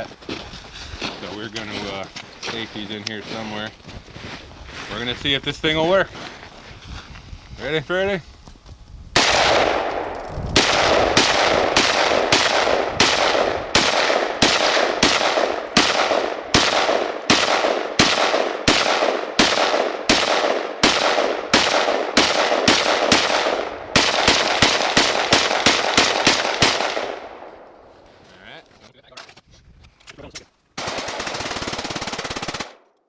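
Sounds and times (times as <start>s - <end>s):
rifle shots echoing: 9.2s - 28.1s, 30.8s - 32.8s.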